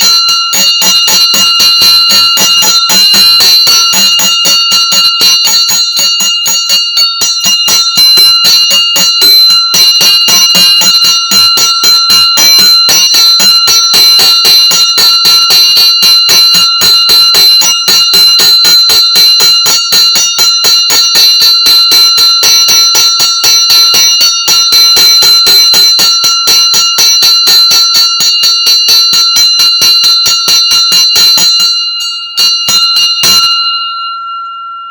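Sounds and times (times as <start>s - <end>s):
hand bell rung rapidly: 0.0s - 34.9s.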